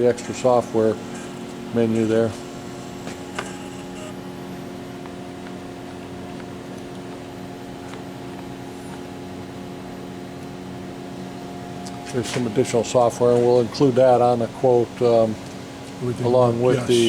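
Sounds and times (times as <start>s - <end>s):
machinery hum: 0.0s - 17.0s.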